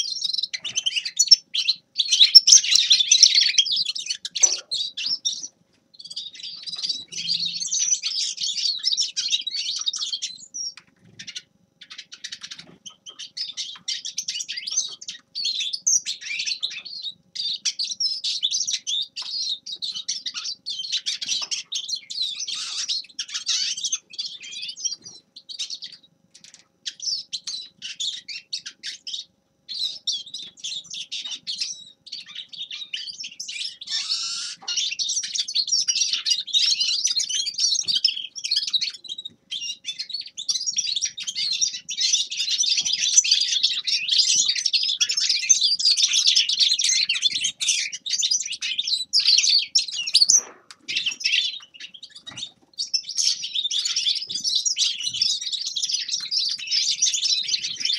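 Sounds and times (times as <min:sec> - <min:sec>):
finch twittering song: 0:00.0 - 0:57.9.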